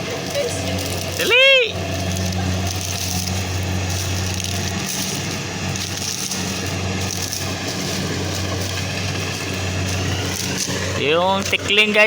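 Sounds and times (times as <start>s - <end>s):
engine running steadily: 0.0s - 12.0s
rushing crackling noise: 0.0s - 12.0s.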